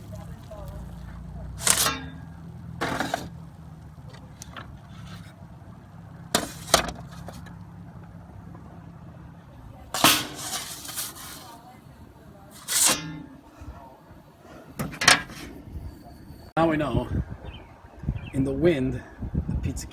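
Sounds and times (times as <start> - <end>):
wind rumble on microphone: 15.3 - 19.9.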